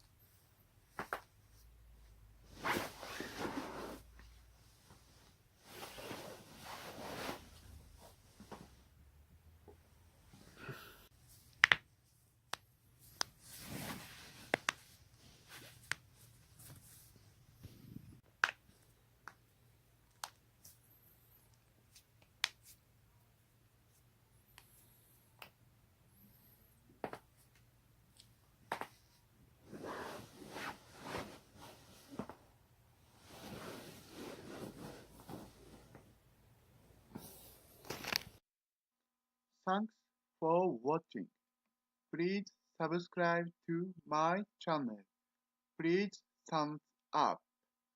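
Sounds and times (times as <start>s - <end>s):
rustling of body movement: 2.4s - 8.9s, 13.0s - 18.2s, 28.7s - 36.2s.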